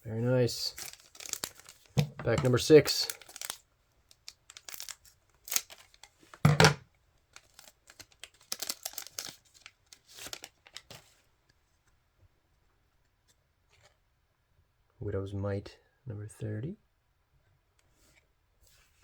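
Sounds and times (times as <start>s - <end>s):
wrapper tearing and crinkling: 0.6s - 6.4s, 7.3s - 11.0s.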